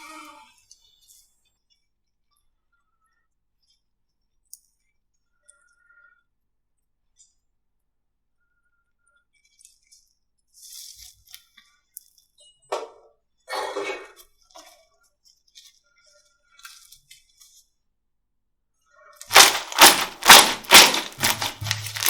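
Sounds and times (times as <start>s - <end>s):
slime squishing and crackling: 19.2s - 22.0s.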